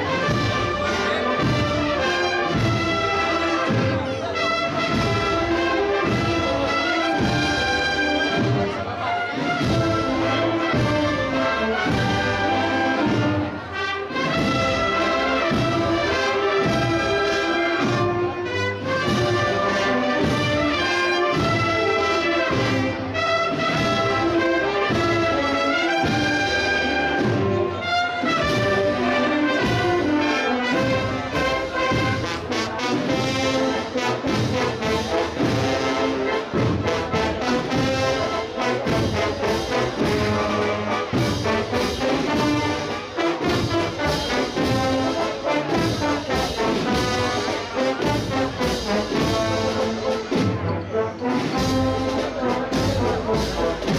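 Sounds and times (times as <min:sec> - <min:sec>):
steady drum beat: 0:00.0 - 0:03.9, 0:09.3 - 0:13.4, 0:28.2 - 0:50.6, 0:51.3 - 0:53.9
brass band playing a march: 0:00.0 - 0:53.9.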